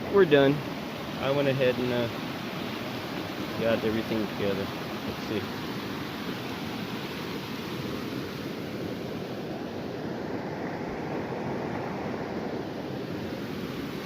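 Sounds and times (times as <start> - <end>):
river water rushing over rocks: 0.0 - 14.0.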